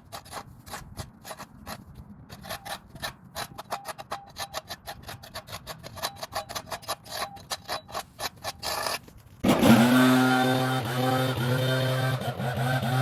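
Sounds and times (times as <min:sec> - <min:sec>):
loud small engine running: 0:09.4 - 0:13.0.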